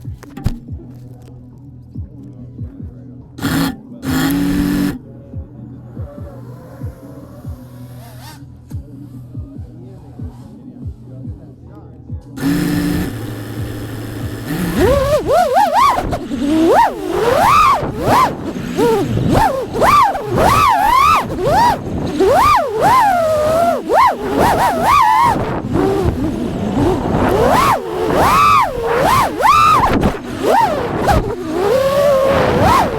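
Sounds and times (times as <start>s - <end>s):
quadcopter motors whining: 3.4s - 5.0s, 12.4s - 32.9s.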